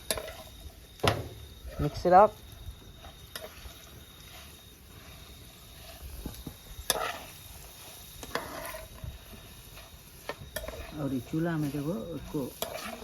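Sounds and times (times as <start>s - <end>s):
faint steady hiss: 0.0s - 13.0s
utensil scraping and knocking pan: 3.0s - 13.0s.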